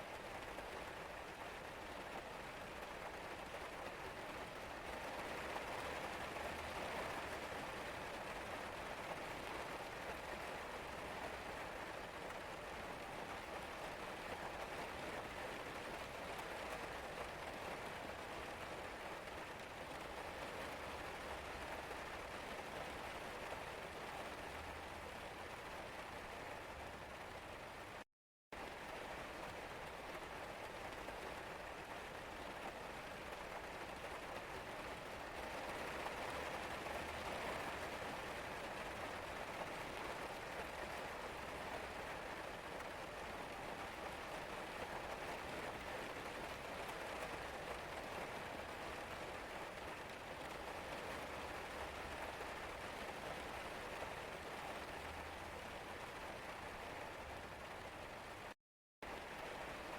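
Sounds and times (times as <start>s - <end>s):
steady rain patter: 0.0s - 59.9s.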